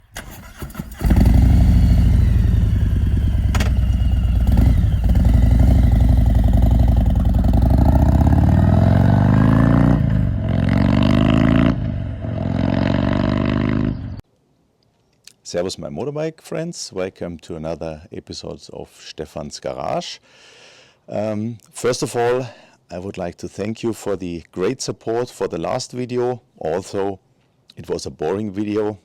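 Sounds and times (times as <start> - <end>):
motorcycle engine running loud: 0.9 - 14.2.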